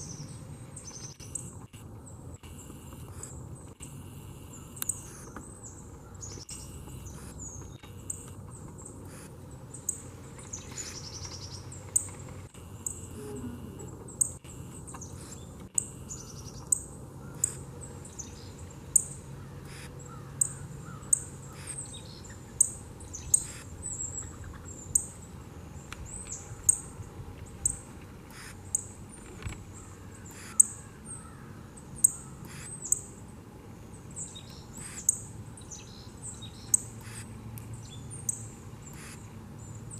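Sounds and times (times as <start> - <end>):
birds giving sharp chip calls: 0.9 - 10.0, 10.6 - 17.7, 19.0 - 25.1, 27.6 - 29.0, 29.8 - 33.2, 34.3 - 35.9, 36.5 - 37.4, 38.2 - 39.3.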